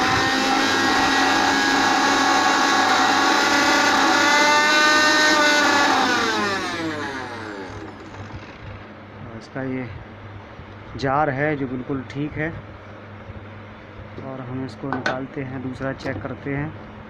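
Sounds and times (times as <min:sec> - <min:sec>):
mixer grinder whining: 0:00.0 - 0:09.0.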